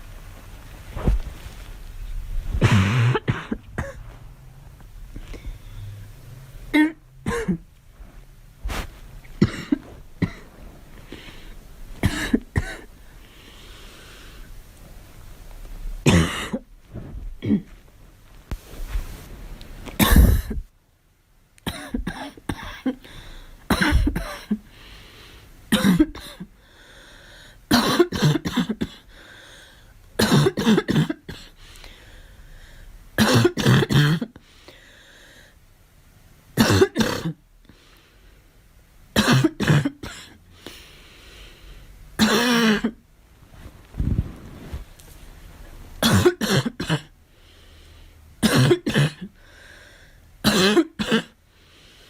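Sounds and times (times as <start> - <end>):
girl coughing: 2.6 - 4.0, 6.7 - 7.7, 9.4 - 10.5, 12.0 - 12.9, 16.0 - 16.7, 17.4 - 17.7, 20.0 - 20.6, 21.6 - 23.0, 23.7 - 24.6, 25.7 - 26.5, 27.7 - 29.0, 30.2 - 31.5, 33.2 - 34.3, 36.6 - 37.4, 39.2 - 40.4, 42.2 - 43.0, 46.0 - 47.1, 48.4 - 49.3, 50.4 - 51.4.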